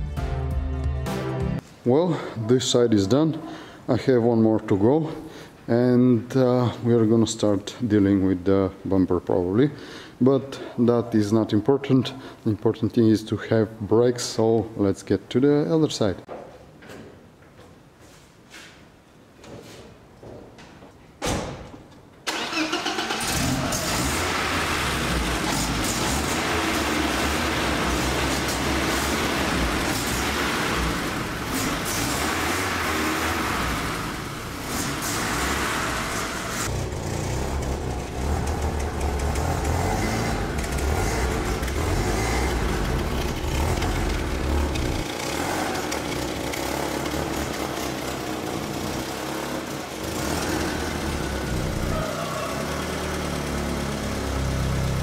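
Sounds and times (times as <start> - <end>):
car engine running: 23.3 - 55.0.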